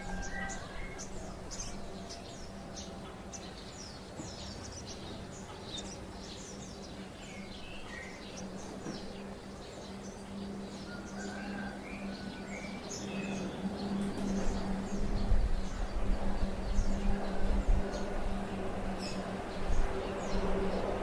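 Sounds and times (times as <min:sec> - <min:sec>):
small birds chirping: 0:00.0 - 0:21.0
steady low hum: 0:00.0 - 0:21.0.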